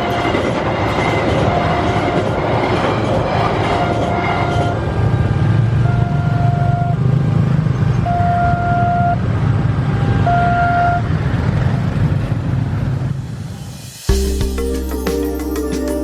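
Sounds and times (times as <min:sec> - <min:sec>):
pulsing electronic warning siren: 0:00.0 - 0:02.8, 0:03.5 - 0:09.3, 0:09.9 - 0:11.1
low rumble of vehicles: 0:03.6 - 0:13.6.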